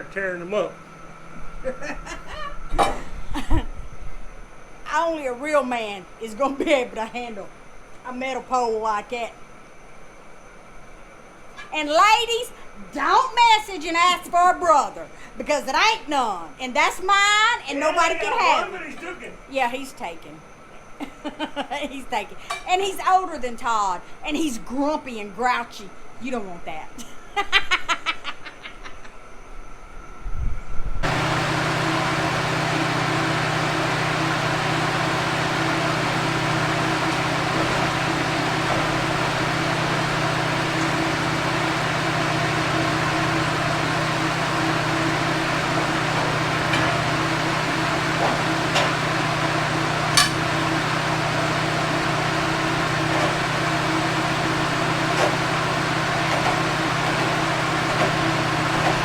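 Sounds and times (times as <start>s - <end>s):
engine running: 0.0s - 7.4s, 31.0s - 59.0s.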